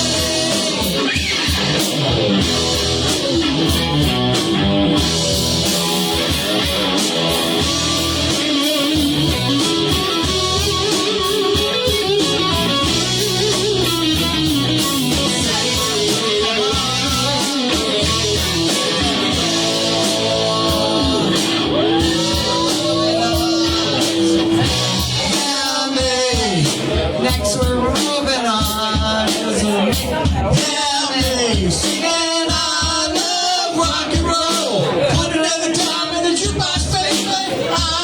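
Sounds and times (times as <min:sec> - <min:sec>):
electric guitar lead: 0:00.0 - 0:25.7
bass guitar: 0:00.0 - 0:38.0
drums: 0:00.0 - 0:38.0.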